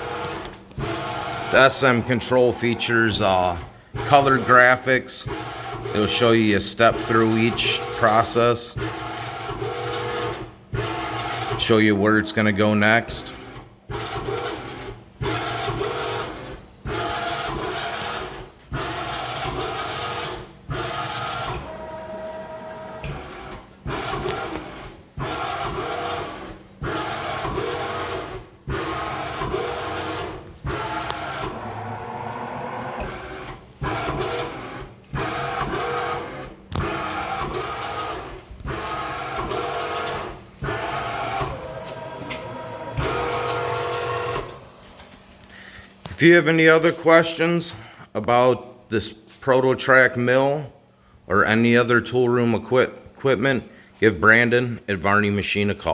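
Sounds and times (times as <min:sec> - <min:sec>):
servo motors whining: 0:18.7 - 0:44.7.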